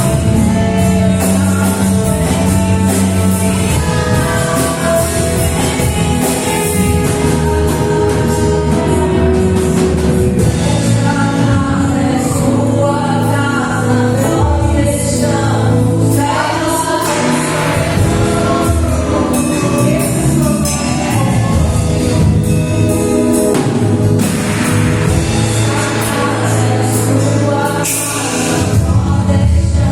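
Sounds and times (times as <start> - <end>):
band playing bass and drums: 0.0 - 29.9
voices singing together: 0.0 - 29.9.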